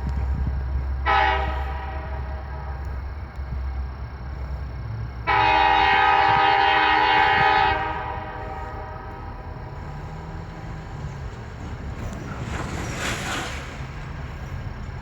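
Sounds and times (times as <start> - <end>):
diesel locomotive rumble: 0.0 - 15.0
train air horn blast: 1.0 - 2.8, 5.2 - 9.7.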